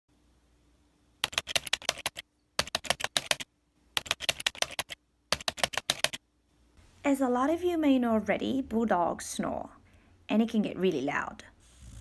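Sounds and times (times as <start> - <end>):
computer keyboard typing: 1.2 - 6.2.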